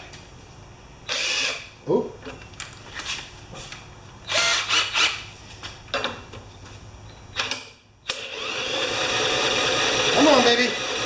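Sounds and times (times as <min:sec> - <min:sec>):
lawn mower engine running: 0:08.2 - 0:11.0.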